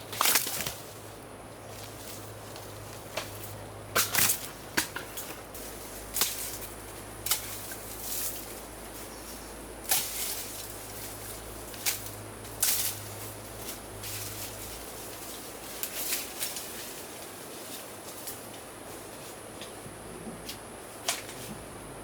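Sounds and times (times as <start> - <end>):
bamboo cracking and snapping: 0.1 - 0.8, 3.1 - 5.4, 6.1 - 8.5, 9.8 - 10.9.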